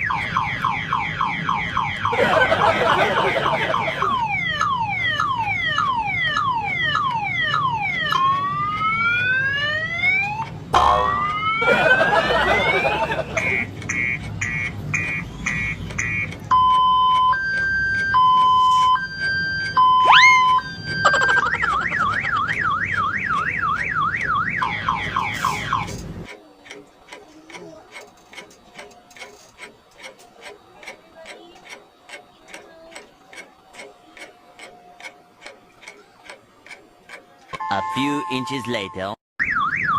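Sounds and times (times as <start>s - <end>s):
fast wailing siren: 0.0s - 13.6s, 15.6s - 25.9s
hi-lo two-tone siren: 0.0s - 26.0s, 37.5s - 39.9s
rapid electronic beeping: 0.0s - 26.0s, 37.5s - 39.2s
clock ticking: 0.0s - 38.9s.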